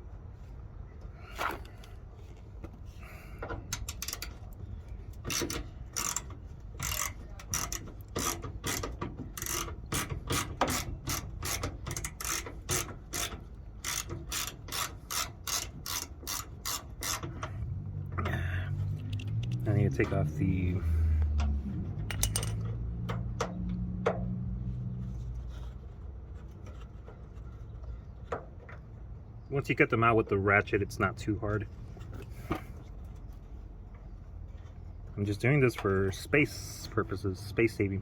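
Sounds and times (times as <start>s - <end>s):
hand ratchet clicking: 3.7s - 4.4s, 5.1s - 17.5s.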